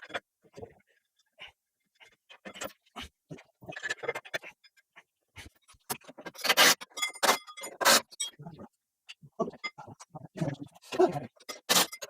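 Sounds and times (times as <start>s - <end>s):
metal clicks and scrapes: 11.4s - 12.0s.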